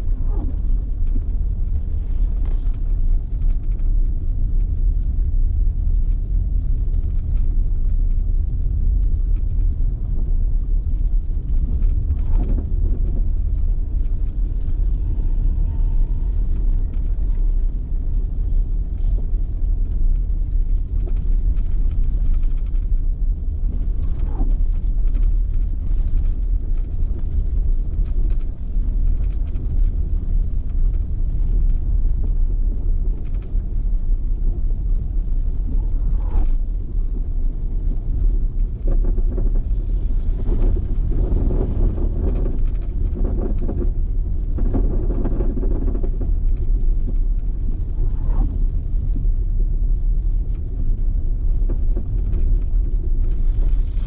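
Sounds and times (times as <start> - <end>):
storm wind rumble: 0.0 - 54.0.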